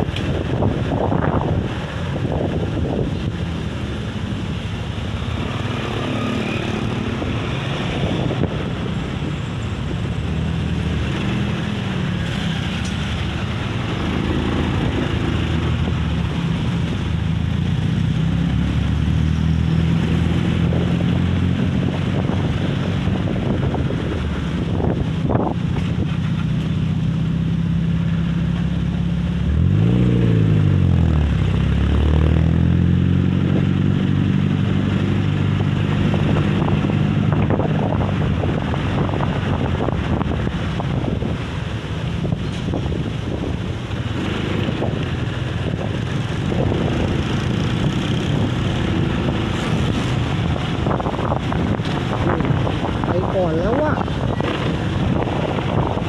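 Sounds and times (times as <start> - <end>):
wind buffeting microphone: 0.0 - 56.0.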